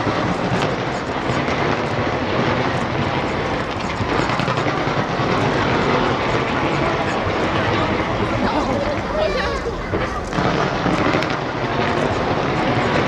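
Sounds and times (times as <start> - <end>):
fireworks barrage rumbling: 3.2 - 4.6, 7.0 - 11.2
fireworks crackles: 7.2 - 11.2.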